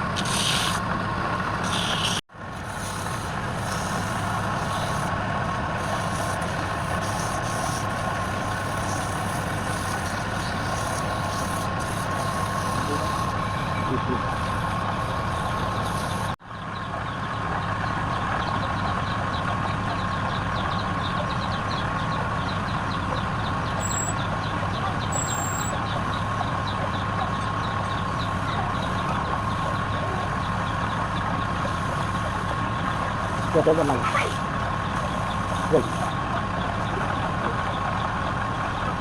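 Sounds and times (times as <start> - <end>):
wood lathe humming: 1.4 - 16.4, 28.0 - 39.0.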